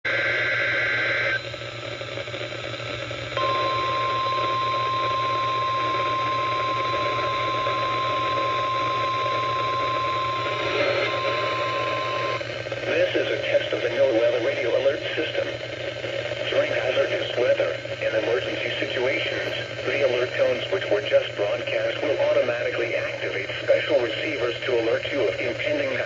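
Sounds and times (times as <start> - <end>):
radio receiver hiss and hum: 0.1 - 26.0
steady warning alarm tone: 3.4 - 12.4.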